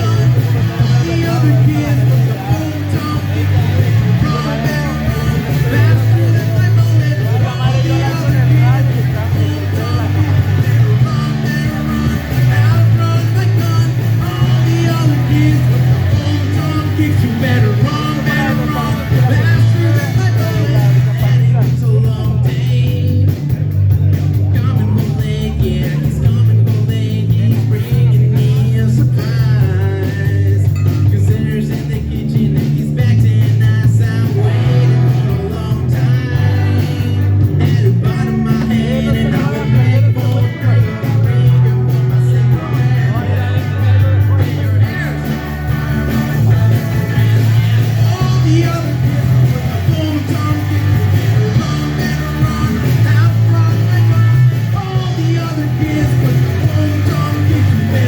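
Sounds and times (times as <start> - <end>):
bass guitar: 0.0 - 58.0
drums: 0.0 - 58.0
electric guitar: 0.0 - 58.0
person singing: 0.0 - 58.0.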